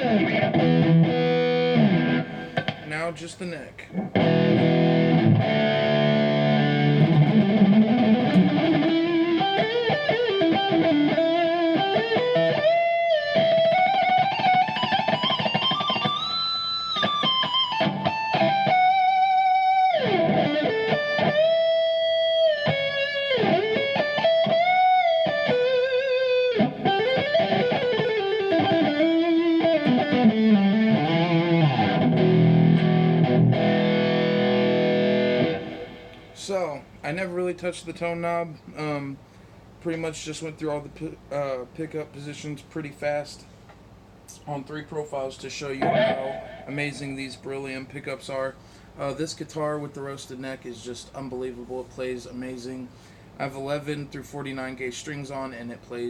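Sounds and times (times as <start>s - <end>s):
distorted electric guitar lead: 0.0s - 2.9s, 4.0s - 36.4s, 45.8s - 47.2s
guitar chords: 0.0s - 3.0s, 3.9s - 36.4s, 45.7s - 47.5s.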